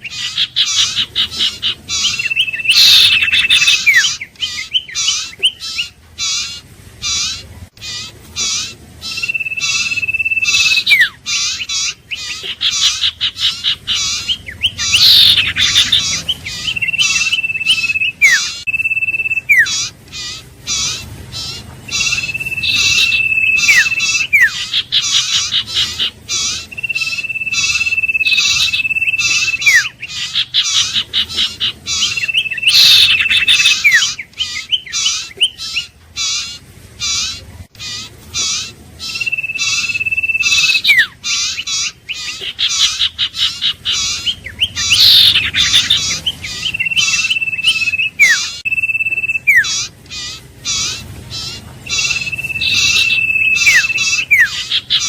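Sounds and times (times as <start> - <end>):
bird chirping rapidly: 0.0 - 55.0
bird whistling high note: 22.0 - 24.6, 46.6 - 49.7, 51.9 - 54.5.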